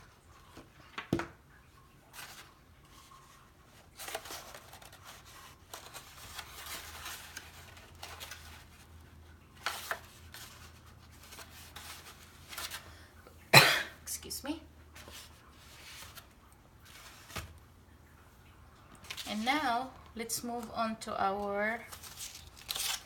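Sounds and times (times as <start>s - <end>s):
paper rustling and crinkling: 2.1s - 9.0s, 9.6s - 12.9s, 15.0s - 17.6s, 18.9s - 20.8s, 21.4s - 23.0s.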